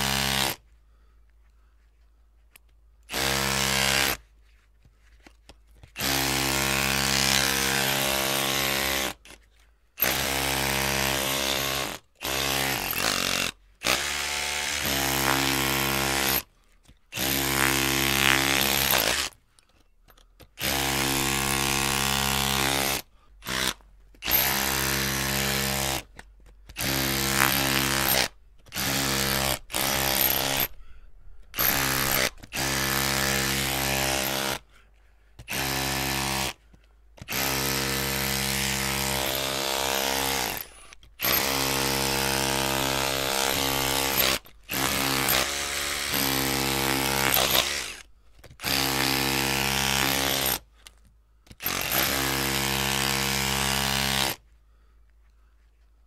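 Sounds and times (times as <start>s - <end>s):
electric drill motor whining: 20.6s - 26.0s, 26.7s - 30.8s, 31.6s - 34.6s, 37.2s - 50.6s.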